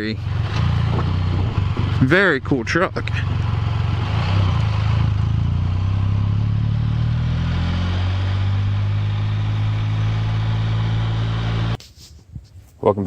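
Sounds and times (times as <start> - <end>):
engine running at cruise: 0.0 - 11.8
wind and road noise: 0.0 - 13.0.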